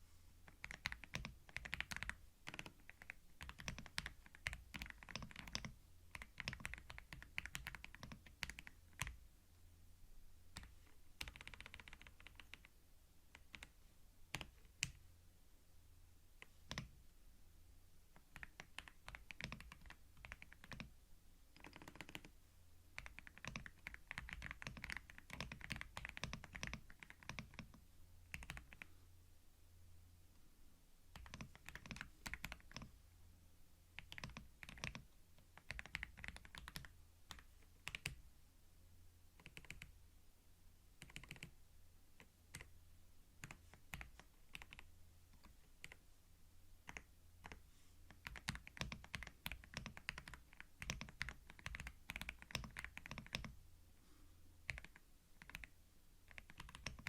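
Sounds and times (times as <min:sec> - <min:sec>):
faint low hum: 0:00.0 - 0:57.0
computer keyboard typing: 0:00.5 - 0:09.2, 0:10.5 - 0:12.7, 0:13.3 - 0:15.0, 0:16.4 - 0:16.9, 0:18.2 - 0:20.9, 0:21.5 - 0:22.3, 0:23.0 - 0:28.9, 0:31.2 - 0:32.9, 0:34.0 - 0:38.2, 0:39.4 - 0:39.9, 0:41.0 - 0:41.6, 0:42.2 - 0:42.7, 0:43.4 - 0:46.0, 0:46.8 - 0:53.6, 0:54.7 - 0:57.0.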